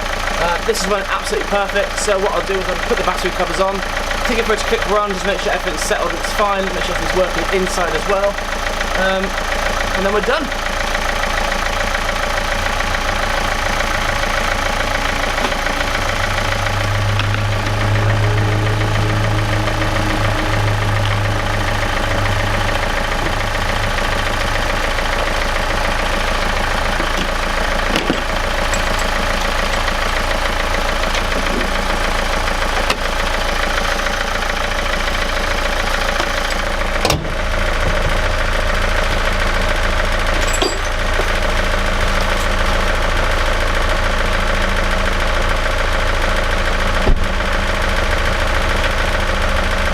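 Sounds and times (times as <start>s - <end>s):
diesel engine idling: 0.0s - 49.9s.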